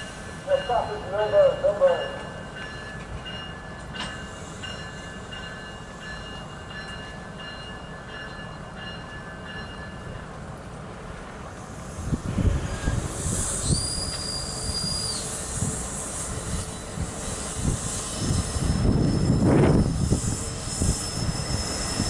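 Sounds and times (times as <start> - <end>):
train wheels squealing: 11.6 - 22.0.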